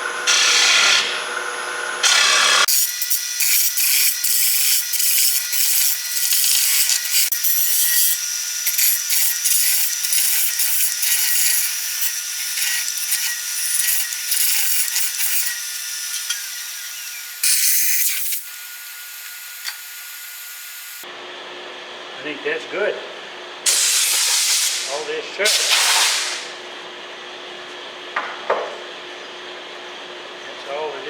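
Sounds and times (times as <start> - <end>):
tool scratching on wood: 2.0 - 18.4.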